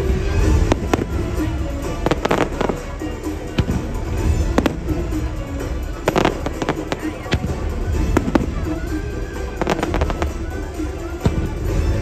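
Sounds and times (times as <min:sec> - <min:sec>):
loud show music: 0:00.0 - 0:12.0
fireworks bangs: 0:00.4 - 0:05.3, 0:09.5 - 0:10.6.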